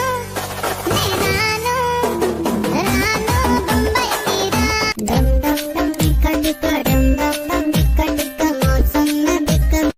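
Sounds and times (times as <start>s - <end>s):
upbeat dance music: 2.1s - 9.8s.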